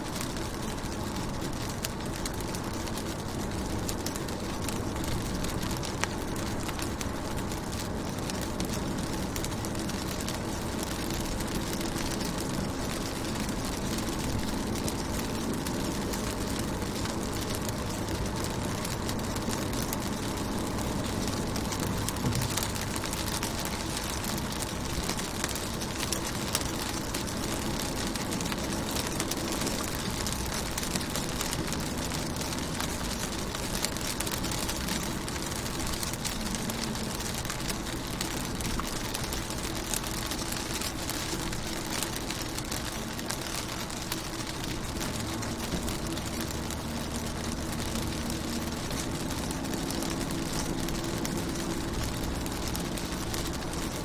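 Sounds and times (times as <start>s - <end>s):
low steady hum: 0.0s - 54.0s
rain on a car: 0.0s - 54.0s
raindrop taps: 0.2s - 54.0s.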